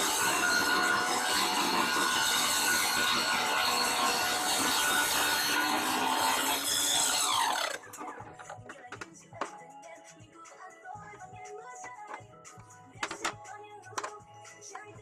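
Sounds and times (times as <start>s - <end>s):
table saw cutting wood: 0.0s - 7.9s.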